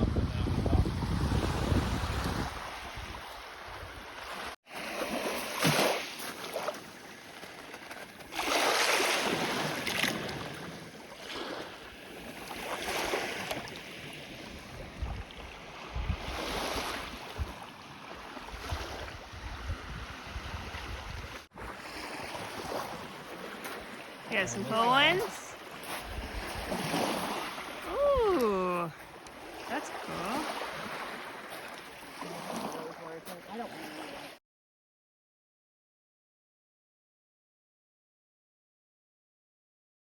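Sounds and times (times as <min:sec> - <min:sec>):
wind buffeting microphone: 0:00.0 - 0:04.0, 0:14.6 - 0:16.6, 0:18.5 - 0:21.5
waves washing on shore: 0:00.3 - 0:34.4.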